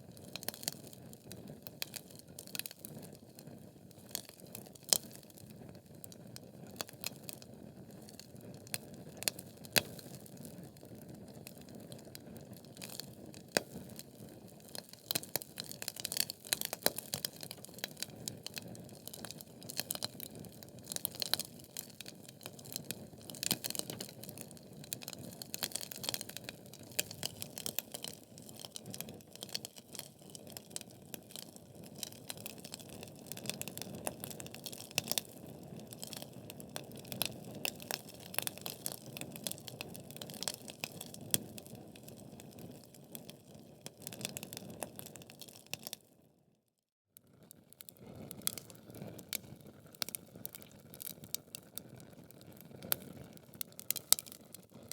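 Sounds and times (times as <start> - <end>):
logs crackling and popping: 0.1 - 46.0, 47.8 - 54.9.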